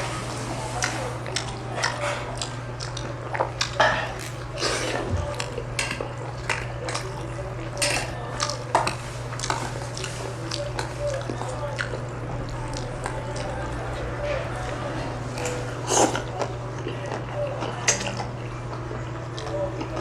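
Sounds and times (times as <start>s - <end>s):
steady low hum: 0.0s - 20.0s
utensils clinking on dishes: 3.3s - 12.1s.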